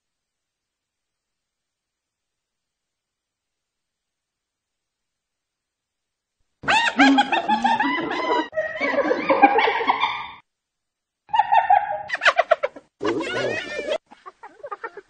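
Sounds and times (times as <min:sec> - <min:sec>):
hyena giggling calls: 0:06.6 - 0:10.4, 0:11.3 - 0:15.0.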